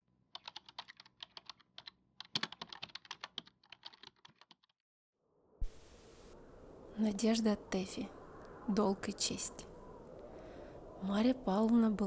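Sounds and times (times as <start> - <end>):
steady hiss: 5.6 - 8.7.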